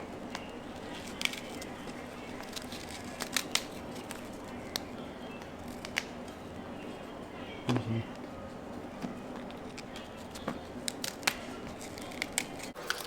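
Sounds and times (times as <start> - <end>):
kitchen utensils clicking: 12.0 - 13.0.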